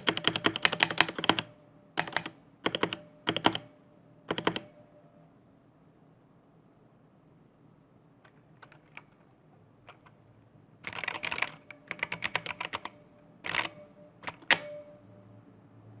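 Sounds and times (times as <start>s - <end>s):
mechanical keyboard keystrokes: 0.0s - 3.7s, 4.3s - 4.7s, 8.2s - 10.2s, 10.8s - 14.8s.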